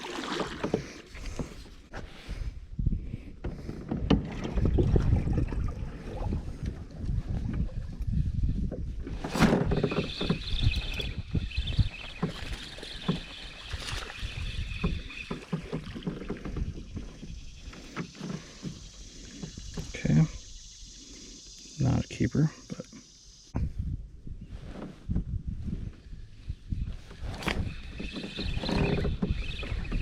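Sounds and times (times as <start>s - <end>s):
gear knocking and rumbling: 6.4s - 20.4s, 27.0s - 30.0s.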